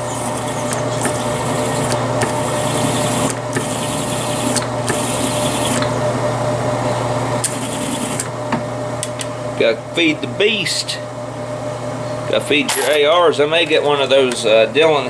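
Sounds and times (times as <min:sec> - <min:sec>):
small electric motor running: 0:00.0 - 0:05.9, 0:07.5 - 0:08.2.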